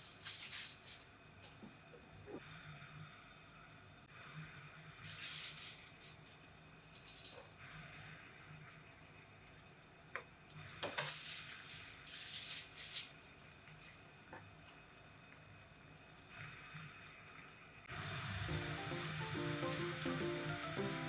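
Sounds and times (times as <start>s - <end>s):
dry rattling: 0.0s - 1.1s.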